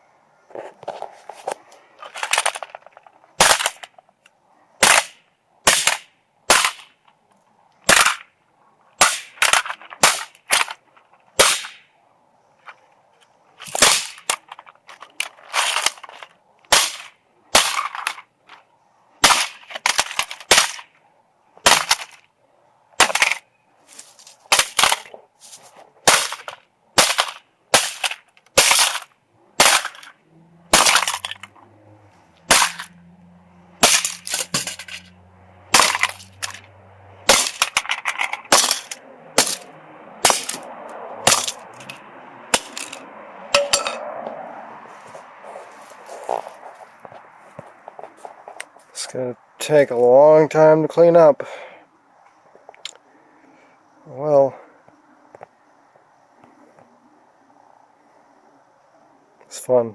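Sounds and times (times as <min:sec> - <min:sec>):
debris clattering: 0:02.0 - 0:04.0, 0:26.1 - 0:31.7, 0:32.4 - 0:33.0, 0:33.8 - 0:35.1, 0:35.7 - 0:44.1.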